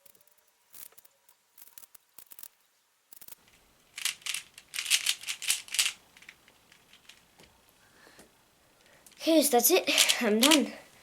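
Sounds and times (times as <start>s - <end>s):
puzzle cube layers clicking: 0.0s - 2.5s, 3.1s - 7.2s.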